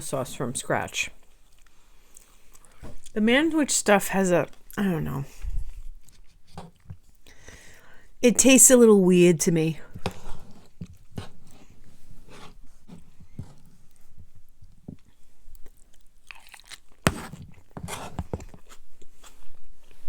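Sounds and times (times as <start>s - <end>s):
person chewing food: 1.2s - 3.2s, 5.7s - 7.7s, 10.4s - 12.2s, 12.9s - 20.0s.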